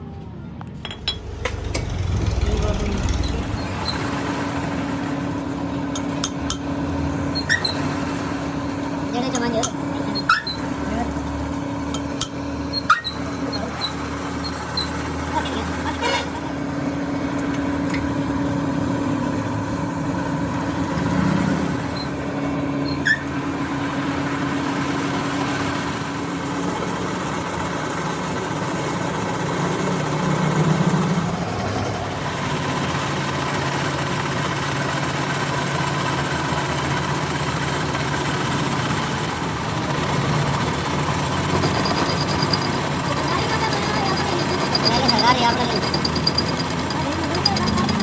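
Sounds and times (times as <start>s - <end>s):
machine motor humming: 1.0s - 6.5s, 39.6s - 48.0s.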